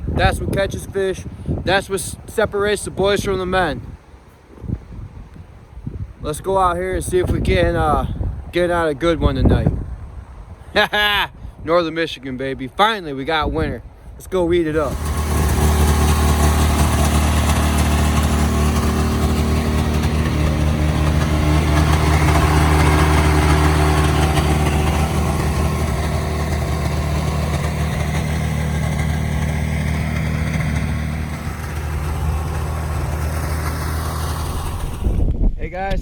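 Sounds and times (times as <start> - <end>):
snowmobile engine running: 14.7 - 35.2.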